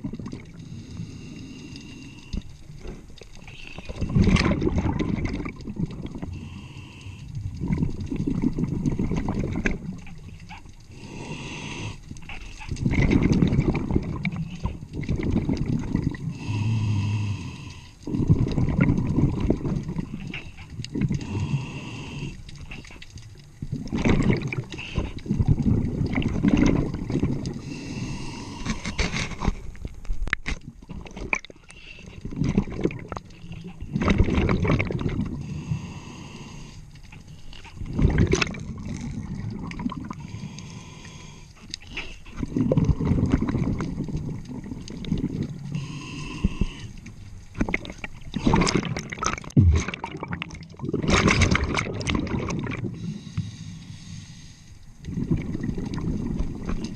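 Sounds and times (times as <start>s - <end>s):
gurgling exhaled bubbles: 0.0s - 36.8s, 37.6s - 53.3s, 55.0s - 56.9s
regulator hissing inhale: 0.5s - 2.4s, 6.3s - 7.4s, 10.9s - 12.1s, 16.3s - 18.0s, 21.2s - 22.5s, 27.6s - 29.4s, 35.4s - 37.6s, 40.2s - 42.2s, 45.7s - 47.0s, 52.9s - 54.9s.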